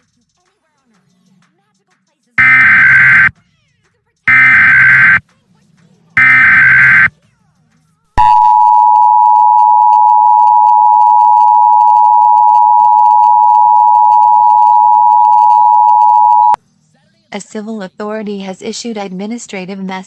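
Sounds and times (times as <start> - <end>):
harsh digital data burst: 2.4 - 3.3, 4.3 - 5.2, 6.2 - 7.1.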